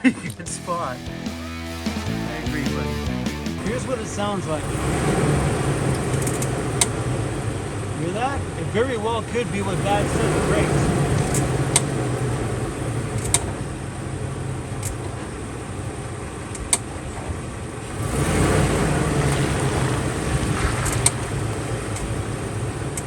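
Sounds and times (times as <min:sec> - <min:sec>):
van engine and tyre rumble: 0:02.5 - 0:23.0
sharp rattling click: 0:05.9 - 0:06.9, 0:13.2 - 0:13.6, 0:20.6 - 0:21.3.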